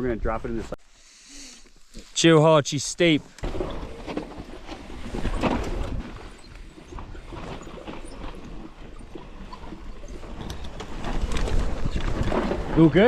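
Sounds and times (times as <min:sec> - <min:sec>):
bike tyres crunching on dirt: 0:10.1 - 0:13.0.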